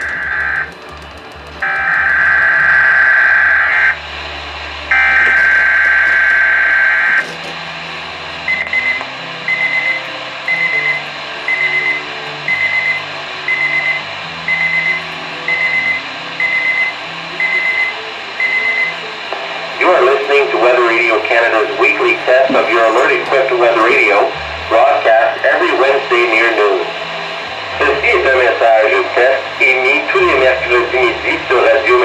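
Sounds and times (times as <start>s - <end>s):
harsh buzzing data warble: 0.0s - 0.8s, 1.6s - 19.1s
weather radio beeping: 0.0s - 0.8s, 1.6s - 4.2s, 4.8s - 7.6s, 8.4s - 19.2s, 19.8s - 32.0s.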